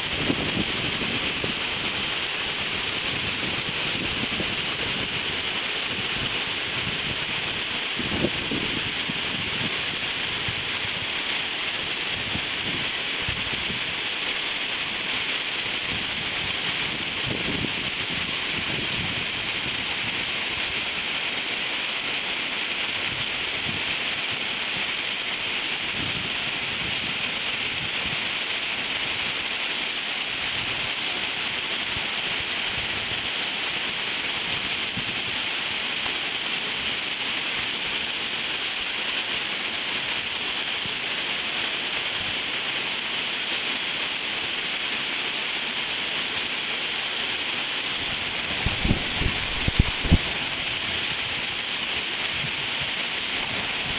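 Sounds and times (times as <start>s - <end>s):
wind buffeting the microphone: 0.0s - 14.0s, 15.6s - 21.0s, 22.9s - 25.0s, 25.8s - 29.3s, 30.3s - 35.5s, 48.0s - 53.9s
water pouring down a waterfall: 0.0s - 53.9s.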